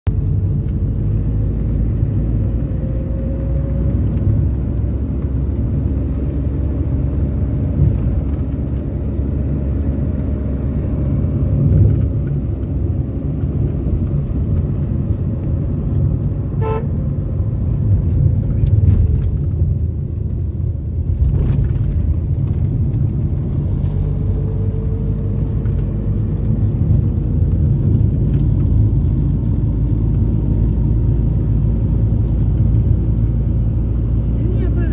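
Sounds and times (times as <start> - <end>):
car engine and road noise: 0.0 - 34.9
vehicle horns tooting: 16.6 - 16.9.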